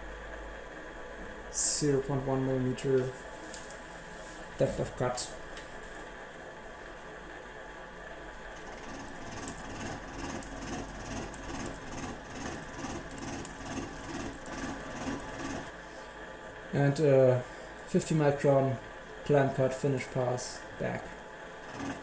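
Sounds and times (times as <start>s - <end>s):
milling machine cutting steel: 8.6s - 15.8s, 19.6s - 22.0s.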